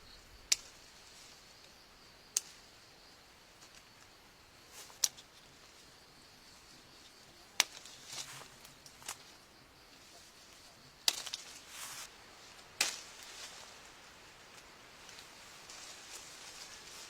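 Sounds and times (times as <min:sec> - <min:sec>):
soft rustling: 0:10.0 - 0:17.0.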